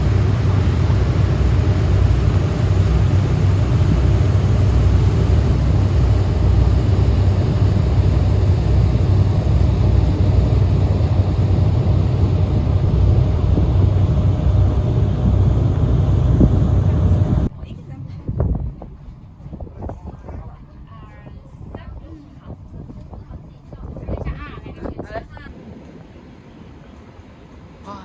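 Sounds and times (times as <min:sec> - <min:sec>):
boat engine droning: 0:00.0 - 0:17.5.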